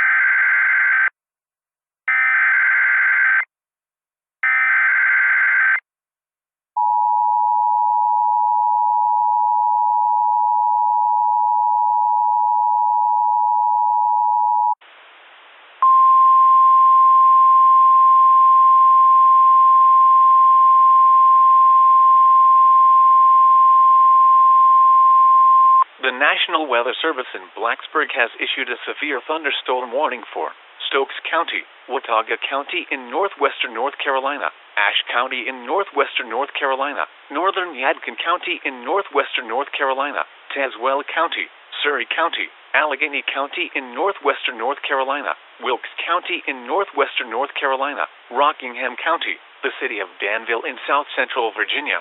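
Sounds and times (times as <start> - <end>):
faint static: 14.3 - 52.0
two-tone attention signal: 15.8 - 25.8.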